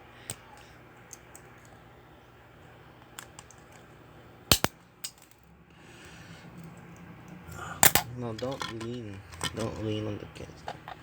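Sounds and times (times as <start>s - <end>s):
clicks of tools and hard parts: 7.5s - 9.9s.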